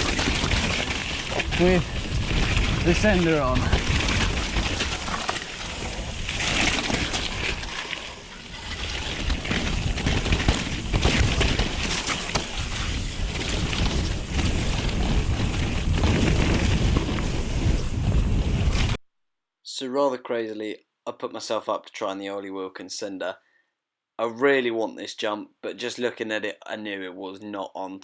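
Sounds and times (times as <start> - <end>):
wind on microphone: 0.0 - 7.8, 8.6 - 19.0
bike knocking and rattling: 0.0 - 17.8
bike tyre noise: 0.0 - 19.0.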